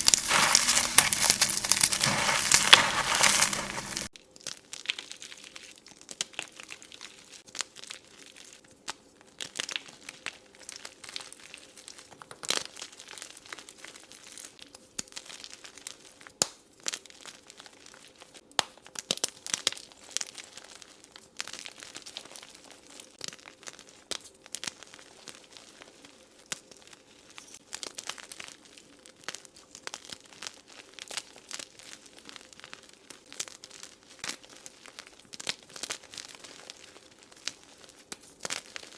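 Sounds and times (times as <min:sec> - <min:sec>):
chalk being crushed: 0:00.0 - 0:04.1.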